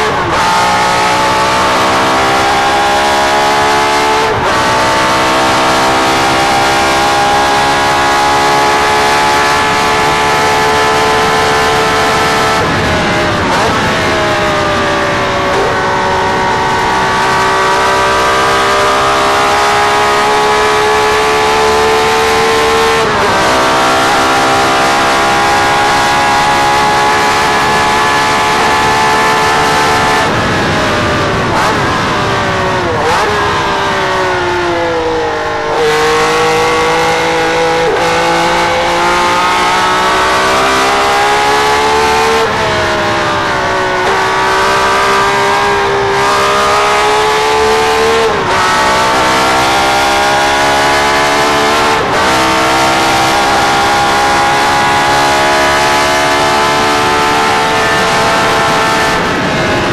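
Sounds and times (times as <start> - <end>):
racing car engine: 0.0 - 59.9.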